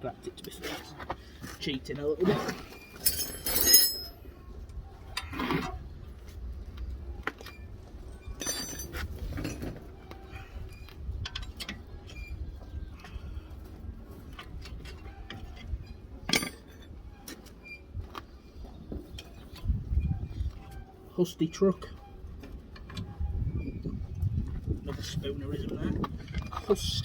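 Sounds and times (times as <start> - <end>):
metal tools clinking and clanking: 2.4 - 4.3, 8.2 - 9.8, 14.4 - 16.9.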